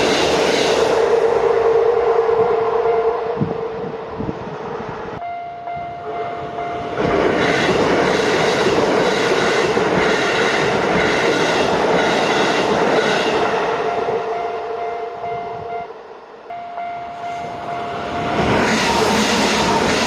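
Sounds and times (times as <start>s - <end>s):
electric train passing: 0.0s - 20.0s
crossing warning bell ringing: 2.4s - 3.9s, 5.2s - 8.6s, 12.9s - 19.8s.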